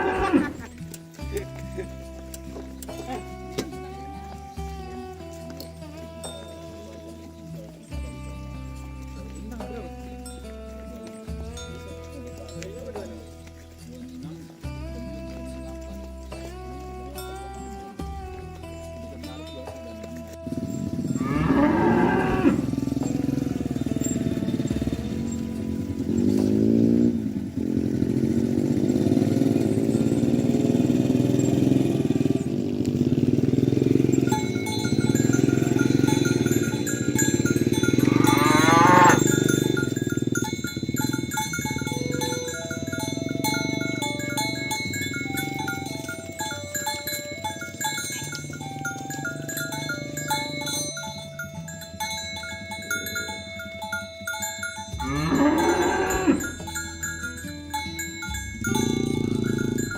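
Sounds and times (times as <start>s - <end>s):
cattle mooing: 0.0s - 0.8s, 20.5s - 51.1s, 54.9s - 57.0s, 58.6s - 59.9s
background music melody: 0.0s - 59.9s.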